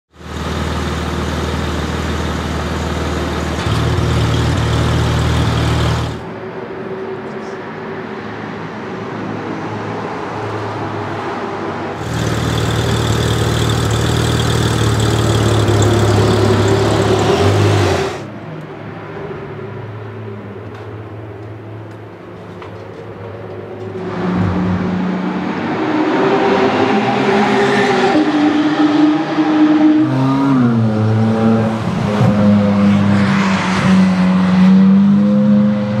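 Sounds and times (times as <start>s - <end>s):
car engine at high revs: 0.1s - 6.3s, 11.9s - 18.3s, 24.0s - 36.0s.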